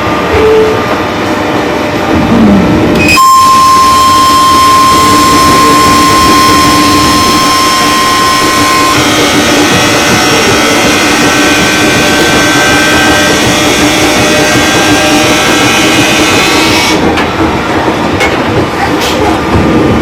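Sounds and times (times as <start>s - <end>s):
electric train running: 0.0s - 20.0s
train motor whine: 1.9s - 17.5s.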